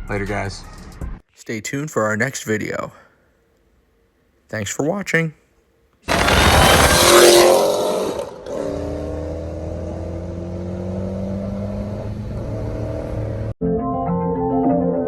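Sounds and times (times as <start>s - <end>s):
car engine revving: 6.1s - 13.6s.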